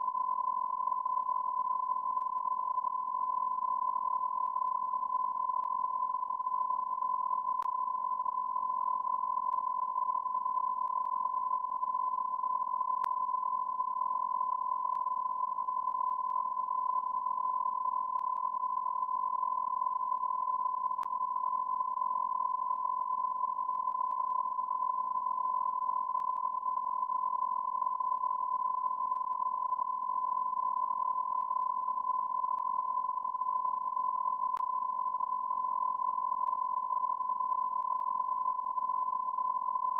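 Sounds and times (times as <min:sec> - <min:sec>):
continuous electronic beep tone: 0:00.0 - 0:39.9
faint clicks: 0:07.6 - 0:07.8.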